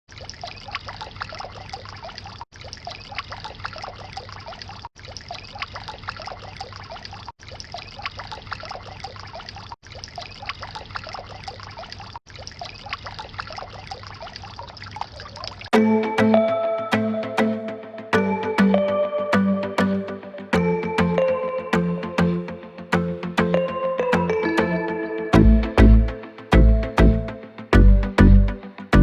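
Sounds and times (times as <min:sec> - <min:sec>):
water trickling and splashing: 0:00.1 - 0:16.6.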